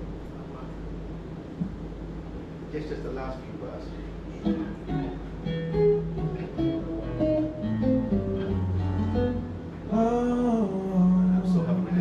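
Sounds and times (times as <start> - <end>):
acoustic guitar playing: 4.3 - 12.0.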